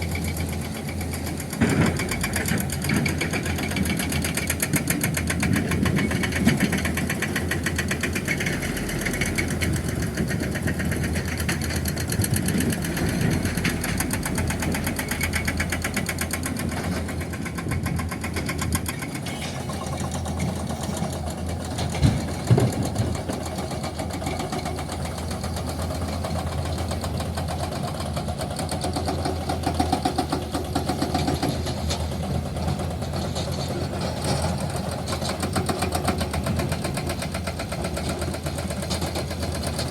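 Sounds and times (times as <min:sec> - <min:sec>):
diesel engine running: 0:00.0 - 0:39.9.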